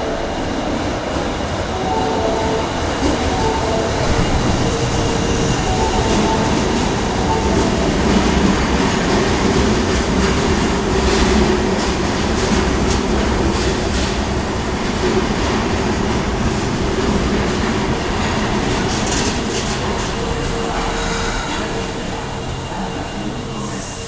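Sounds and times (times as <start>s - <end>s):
subway train running: 0.0s - 24.0s.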